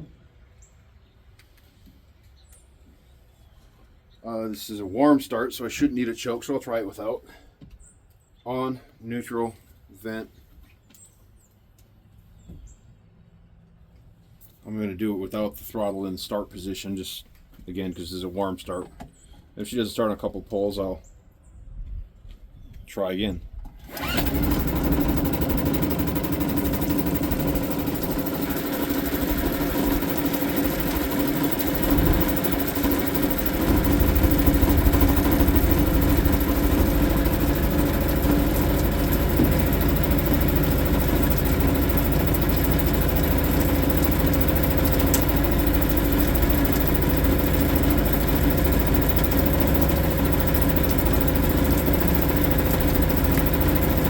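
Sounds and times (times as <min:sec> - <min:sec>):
outboard motor running: 0:23.9 - 0:54.0.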